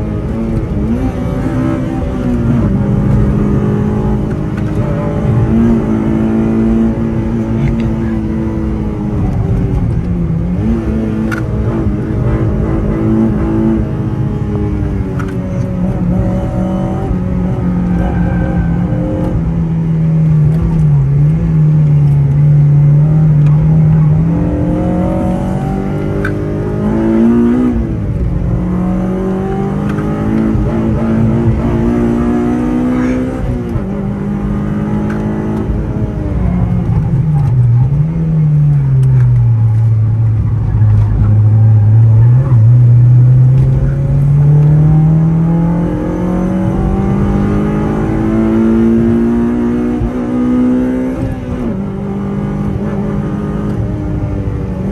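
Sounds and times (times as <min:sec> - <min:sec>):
car engine accelerating: 0:00.0 - 0:54.9.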